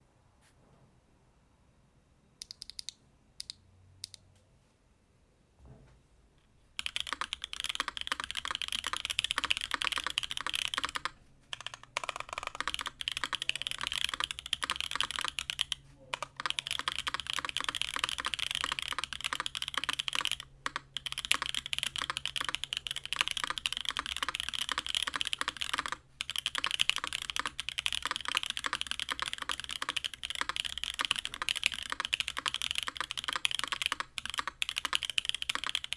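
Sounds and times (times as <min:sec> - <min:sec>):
mechanical keyboard typing: 0:02.4 - 0:04.2, 0:06.8 - 0:35.9.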